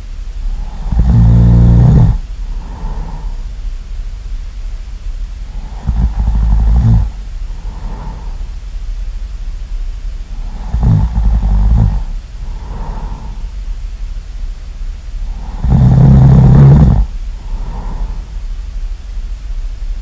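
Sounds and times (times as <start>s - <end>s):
soft breaths: 0.0s - 4.1s, 5.2s - 9.1s, 10.1s - 19.3s
loud human snoring: 0.5s - 3.4s, 5.5s - 8.5s, 10.4s - 13.5s, 15.2s - 18.3s.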